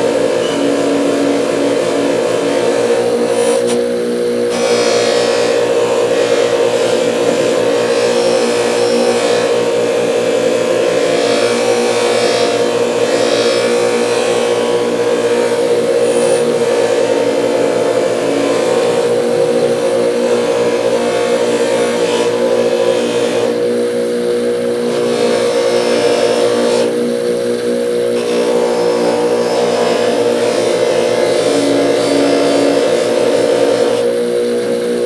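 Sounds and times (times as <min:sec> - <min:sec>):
abrasive wheel scrubbing metal: 0:00.0 - 0:27.2
bench grinder motor hum: 0:00.0 - 0:35.0.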